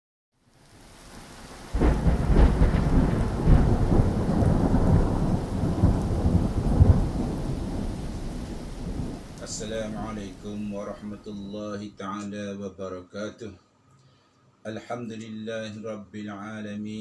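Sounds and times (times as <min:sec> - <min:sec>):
rain: 0:00.4 - 0:11.6
thunder rumbling: 0:01.0 - 0:11.5.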